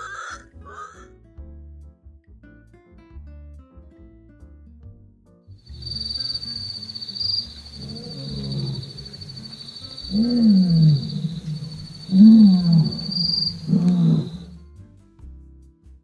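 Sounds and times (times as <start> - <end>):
animal low calls: 5.7 - 14.6
high insect-like trill: 5.7 - 14.6.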